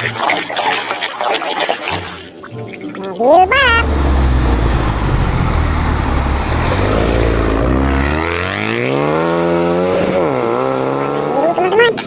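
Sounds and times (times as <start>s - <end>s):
race car engine revving: 3.4s - 11.4s.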